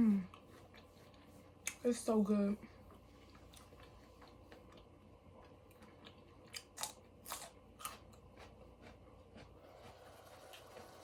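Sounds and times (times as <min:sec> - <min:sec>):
chips being chewed: 0:03.2 - 0:11.0.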